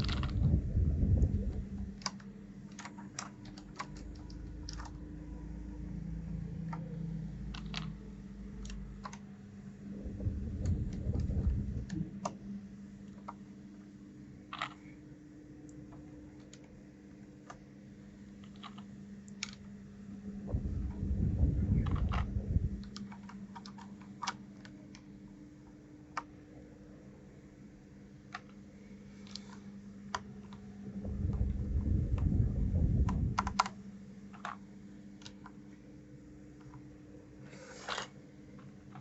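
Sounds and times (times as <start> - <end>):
mechanical keyboard clicks: 0.0 - 0.5, 1.9 - 5.0, 33.1 - 33.8
low hum: 0.0 - 24.0, 28.7 - 35.1.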